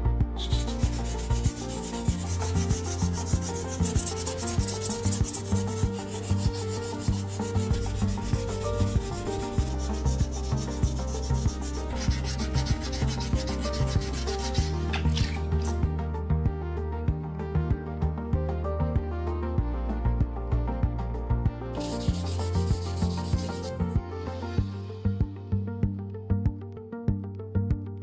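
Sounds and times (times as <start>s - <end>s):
background music with steady beat: 0.0s - 28.0s
scratchy abrasive sanding: 0.4s - 15.8s, 21.8s - 24.0s.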